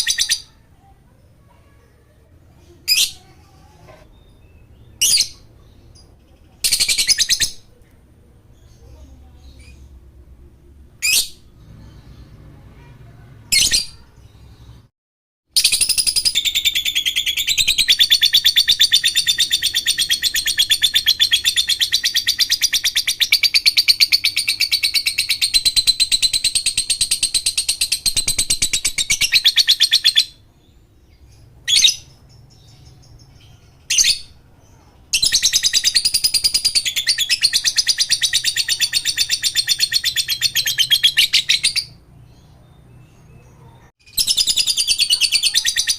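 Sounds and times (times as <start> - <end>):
lovebird chattering trill: 0.0 - 0.6, 4.2 - 7.7, 15.6 - 30.4, 35.2 - 42.4, 44.0 - 45.9
lovebird chirping: 0.0 - 14.9, 15.6 - 45.9.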